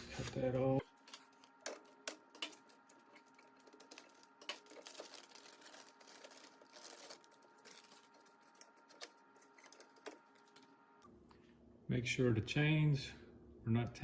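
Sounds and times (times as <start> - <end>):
rustling of foam packing: 0.0 - 10.7.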